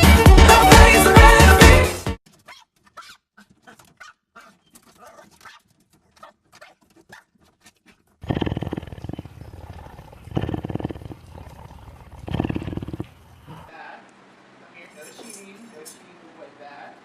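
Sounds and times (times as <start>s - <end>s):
pet animal rumbling: 7.8s - 13.7s.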